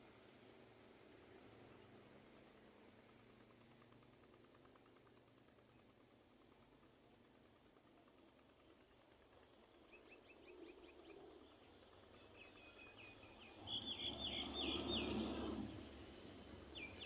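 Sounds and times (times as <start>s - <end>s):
bird chirping: 12.2s - 15.7s, 16.7s - 17.0s.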